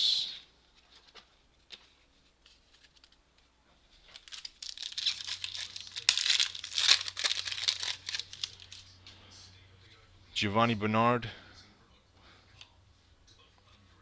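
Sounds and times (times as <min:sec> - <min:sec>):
foil wrapper tearing and crinkling: 0:04.1 - 0:08.8.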